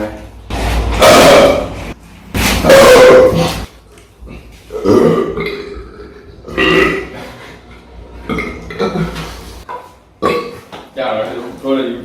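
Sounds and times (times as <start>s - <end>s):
men burping loudly: 1.0s - 1.8s, 4.2s - 7.3s, 8.2s - 9.4s, 10.2s - 10.7s.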